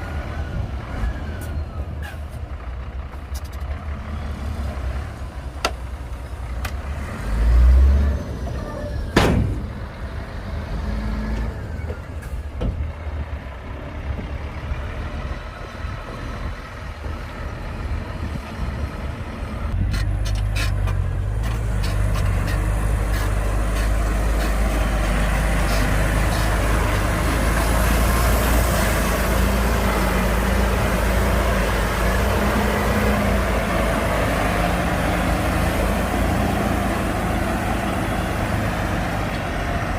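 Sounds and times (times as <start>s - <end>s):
diesel earthmoving machines rumbling: 0.0s - 39.9s
heavy thump: 9.2s - 9.8s.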